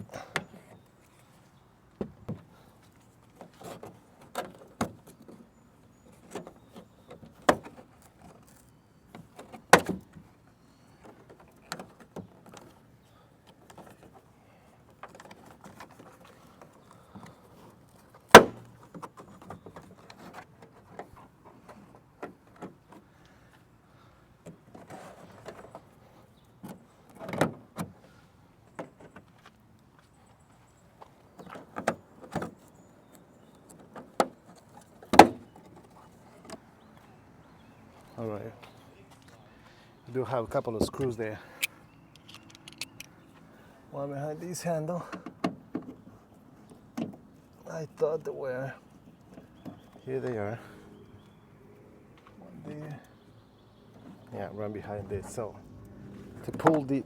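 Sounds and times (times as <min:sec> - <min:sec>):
plastic clips snapping: 0:41.6 - 0:43.1.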